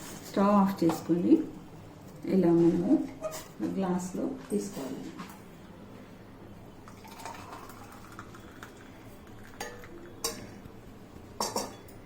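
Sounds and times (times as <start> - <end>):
metal utensils clinking: 9.4 - 10.6.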